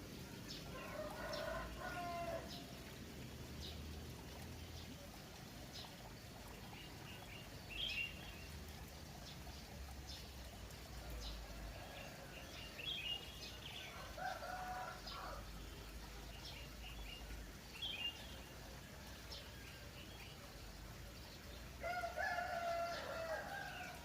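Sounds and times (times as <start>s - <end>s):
steady background hiss: 0.0s - 24.0s
small birds chirping: 3.5s - 21.7s.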